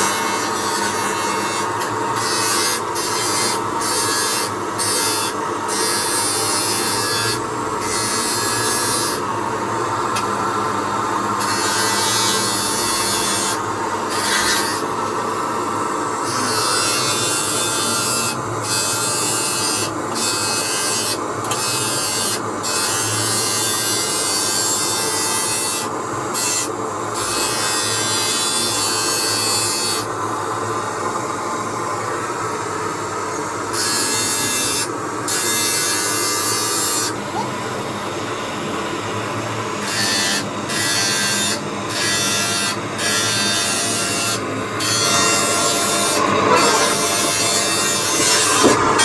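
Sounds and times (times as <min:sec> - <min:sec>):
tool rasping on hard material: 0:39.9 - 0:49.0.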